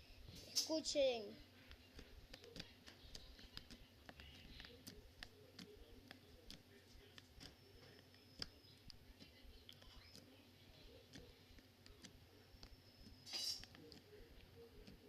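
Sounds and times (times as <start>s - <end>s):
slime clicking and popping: 1.7s - 10.3s.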